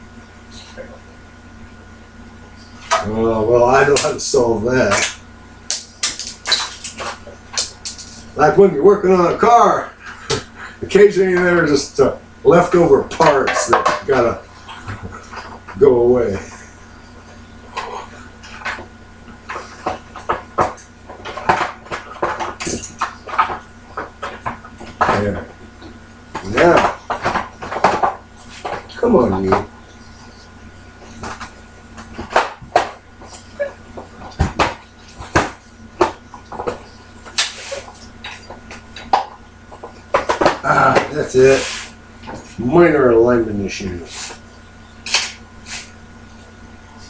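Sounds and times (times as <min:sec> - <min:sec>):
short scraping hiss: 0:41.5 - 0:42.0, 0:45.6 - 0:46.0.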